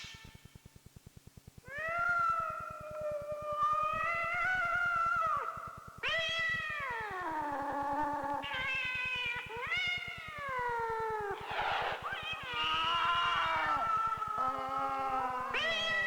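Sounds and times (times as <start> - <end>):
cat yowling: 6.1 - 16.0
breathy noise: 11.4 - 15.2.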